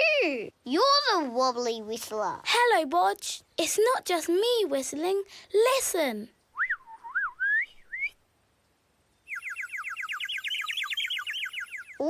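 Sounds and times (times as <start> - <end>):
cartoon bird wobbly whistle: 6.6 - 8.1, 9.3 - 12.0.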